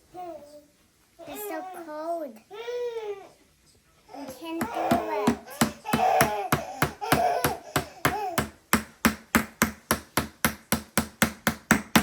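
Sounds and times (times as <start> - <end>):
child whining: 0.1 - 3.4, 4.1 - 8.5.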